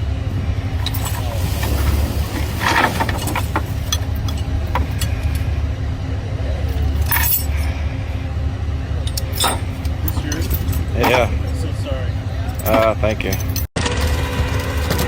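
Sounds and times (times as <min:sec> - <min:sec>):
loud rattling bursts: 0:00.0 - 0:08.2, 0:09.0 - 0:15.0
low mechanical rumble: 0:00.0 - 0:15.0
metallic clinks and clicks: 0:00.7 - 0:05.6, 0:06.6 - 0:07.7, 0:09.0 - 0:13.7.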